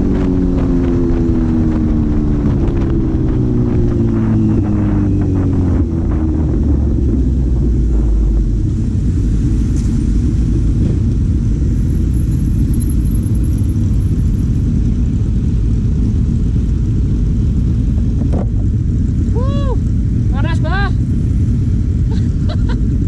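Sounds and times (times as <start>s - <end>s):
vehicle engine rumbling: 0.0s - 23.0s.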